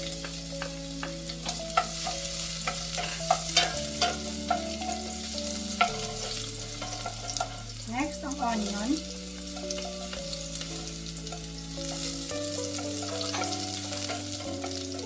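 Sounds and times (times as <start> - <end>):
garlic sizzling in oil: 0.0 - 15.0
utensil clicking against pot: 0.1 - 7.6.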